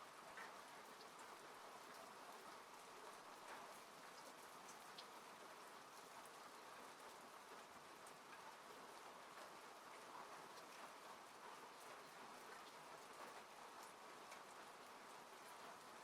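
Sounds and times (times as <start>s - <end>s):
rain on a car heard inside: 0.0s - 16.0s.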